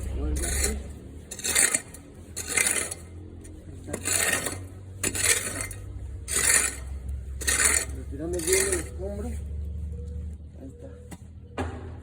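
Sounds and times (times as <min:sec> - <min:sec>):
rubble scraped off ground: 0:00.0 - 0:09.0.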